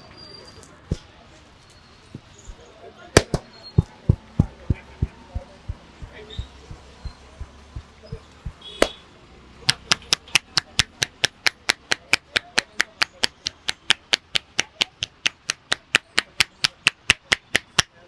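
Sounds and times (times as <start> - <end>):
hands slapping in massage: 3.2 - 9.0, 9.7 - 18.0.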